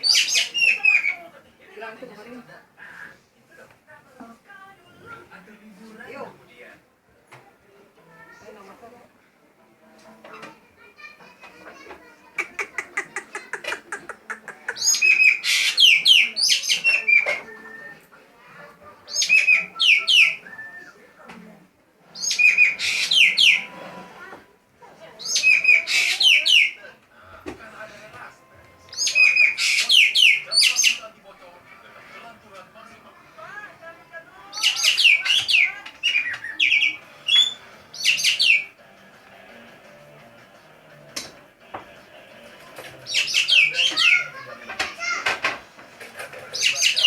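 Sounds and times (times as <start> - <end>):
harsh rasping bird call: 12.4 - 17.4, 22.2 - 24.0, 34.5 - 38.8
bird calling with falling whistles: 19.2 - 20.9.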